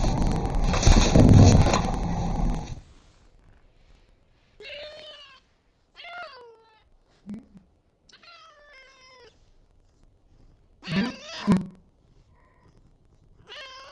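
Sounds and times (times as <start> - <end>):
cat meowing: 4.6 - 6.9, 8.1 - 9.4, 10.8 - 11.5, 13.4 - 13.9.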